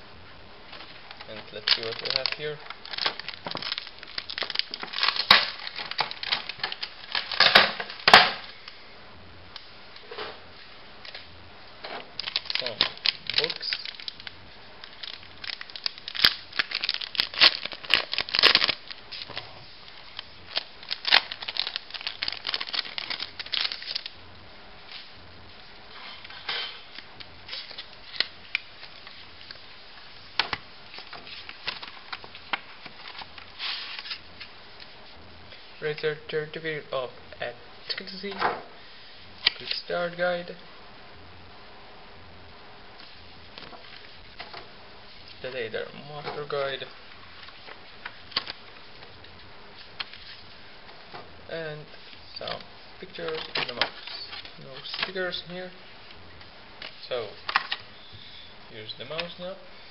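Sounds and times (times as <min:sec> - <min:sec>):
paper rustling: 0:30.4 - 0:34.5.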